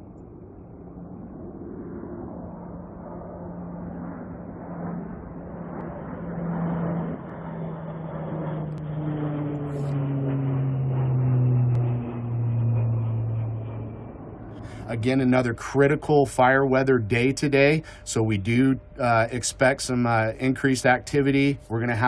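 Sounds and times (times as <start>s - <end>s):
engine humming: 5.8s - 22.0s.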